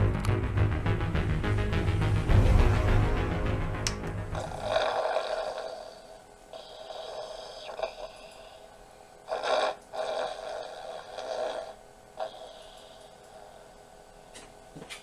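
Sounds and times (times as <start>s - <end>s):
person snoring: 4.3s - 13.7s.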